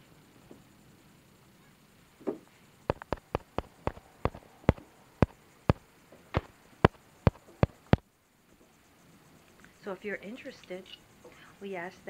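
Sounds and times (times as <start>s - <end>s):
sharp taps: 2.9s - 8.0s.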